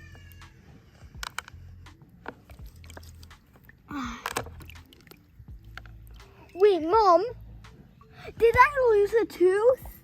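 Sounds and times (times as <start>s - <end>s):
toys clicking and knocking: 1.0s - 2.7s.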